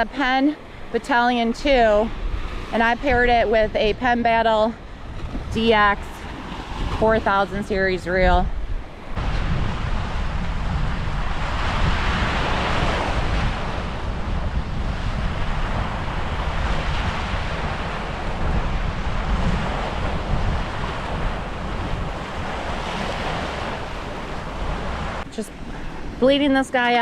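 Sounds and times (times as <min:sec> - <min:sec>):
wind buffeting microphone: 0:01.6 - 0:27.0
surf washing onto beach: 0:15.0 - 0:25.3.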